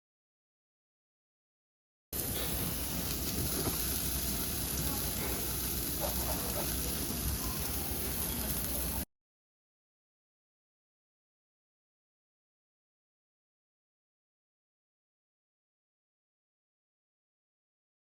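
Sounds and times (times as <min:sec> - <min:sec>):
steady hissing: 0:02.2 - 0:09.0.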